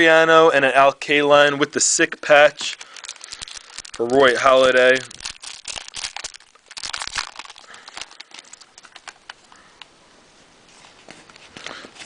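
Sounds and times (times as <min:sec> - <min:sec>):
card packs crinkling and clicking: 0:02.2 - 0:09.9.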